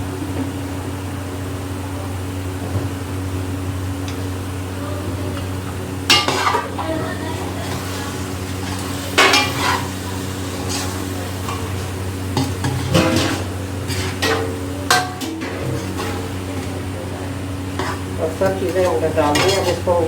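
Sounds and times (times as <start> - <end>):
steady low hum: 0.0 - 20.0
metal spoon stirring meat in pot: 6.1 - 6.8, 7.6 - 20.0
spoon scraping pot: 7.6 - 10.0, 10.6 - 16.4, 17.7 - 20.0.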